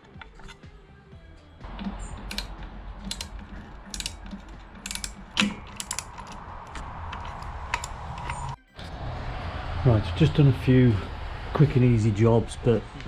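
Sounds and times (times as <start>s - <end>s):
hand tools clicking on metal: 1.6s - 8.6s.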